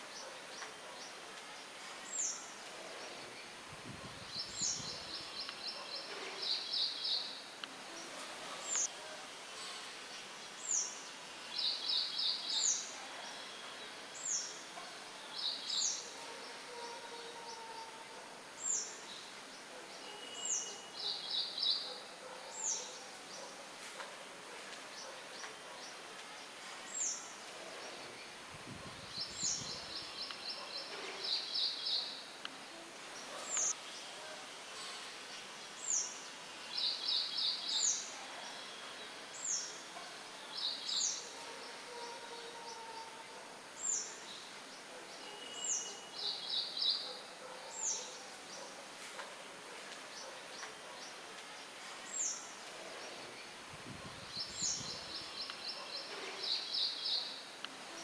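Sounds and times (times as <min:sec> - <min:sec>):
songbirds calling: 0:00.0 - 0:08.9, 0:24.6 - 0:58.0
wind hiss: 0:02.0 - 0:05.7, 0:27.6 - 0:30.5, 0:52.8 - 0:55.7.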